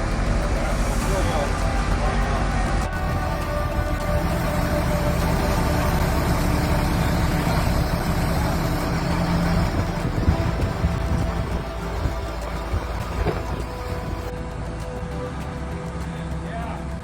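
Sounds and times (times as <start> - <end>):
large vehicle engine running: 0.0 - 17.0.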